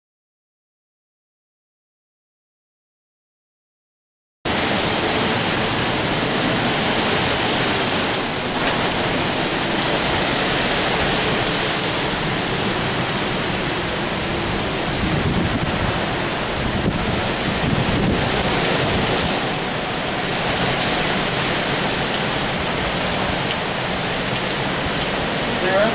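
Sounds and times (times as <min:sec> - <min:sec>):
heavy rain: 0:04.5 - 0:25.9
strong wind: 0:04.5 - 0:25.9.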